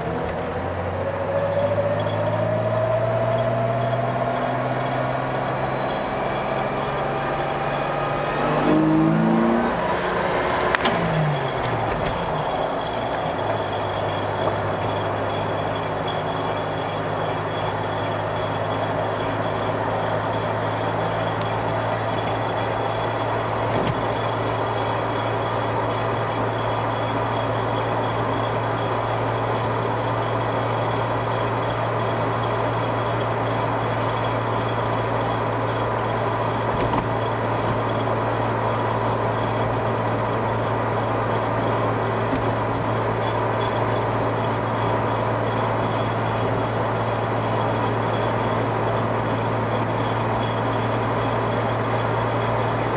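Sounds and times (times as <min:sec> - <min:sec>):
vehicle engine droning: 0:00.0 - 0:52.9.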